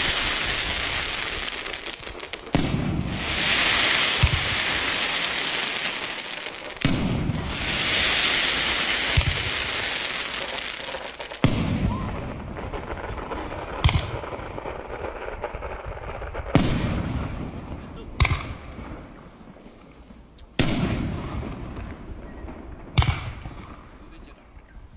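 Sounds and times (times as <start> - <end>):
fireworks crackling hiss: 0.0 - 17.1
fireworks bangs: 0.0 - 24.5.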